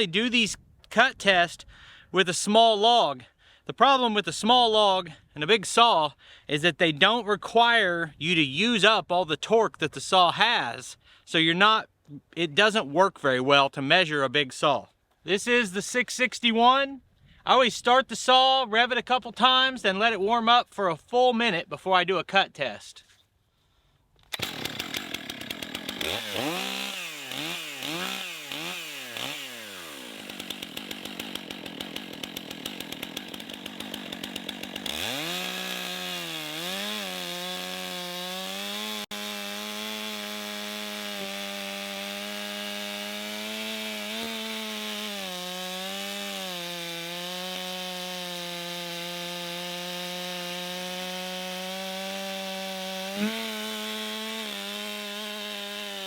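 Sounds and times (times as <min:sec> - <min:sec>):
chainsaw cutting log: 0:24.2 - 0:56.0
chainsaw revving: 0:24.3 - 0:56.0.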